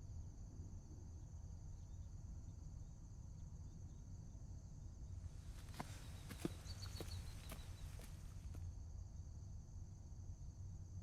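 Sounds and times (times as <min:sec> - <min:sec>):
crickets chirping: 0:05.3 - 0:08.6.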